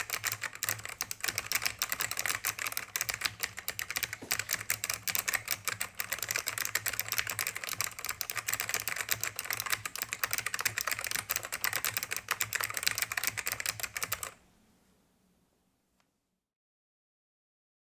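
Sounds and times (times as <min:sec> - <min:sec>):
fast typing key clicks: 0:00.0 - 0:14.4.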